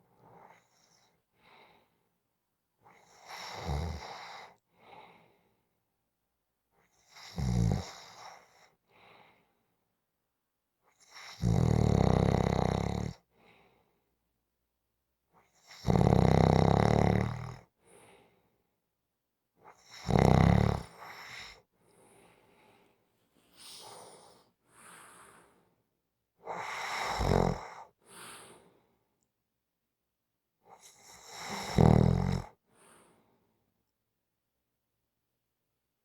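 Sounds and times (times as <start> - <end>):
loud snores with buzzing rattle: 3.1 - 4.4, 7.1 - 8.3, 11.1 - 13.2, 15.6 - 17.7, 19.8 - 21.5, 26.5 - 27.9, 30.8 - 32.6
faint breaths: 21.8 - 25.8, 27.8 - 29.0, 32.7 - 33.6.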